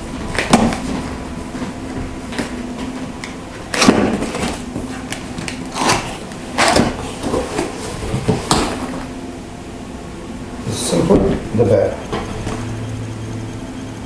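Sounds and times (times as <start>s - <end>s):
cardboard scraping and rustling: 0.0s - 9.2s.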